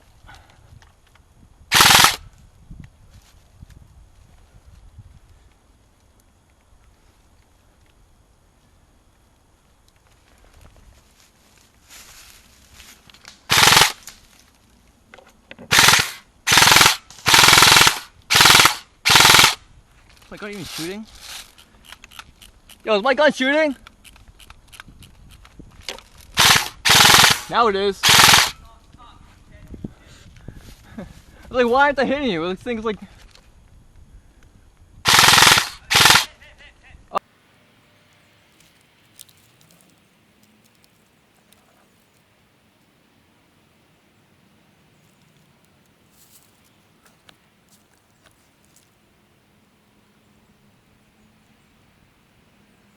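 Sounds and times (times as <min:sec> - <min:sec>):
airsoft gun full-auto bursts: 0:01.7 - 0:02.2, 0:13.5 - 0:14.0, 0:15.7 - 0:19.6, 0:26.4 - 0:28.6, 0:35.0 - 0:36.3.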